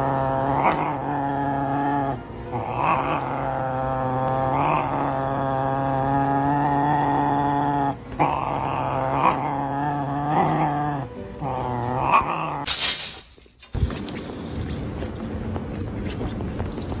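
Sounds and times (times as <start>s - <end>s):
pet animal growling: 0.0s - 12.7s.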